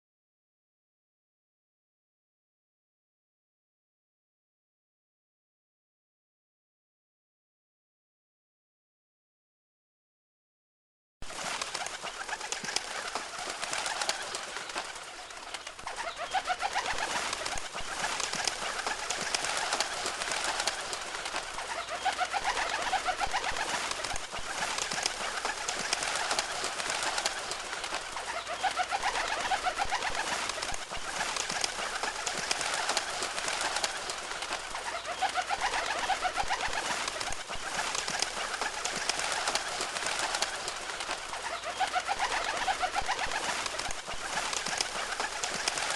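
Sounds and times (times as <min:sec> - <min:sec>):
flock of birds calling: 0:11.3 - 0:45.9.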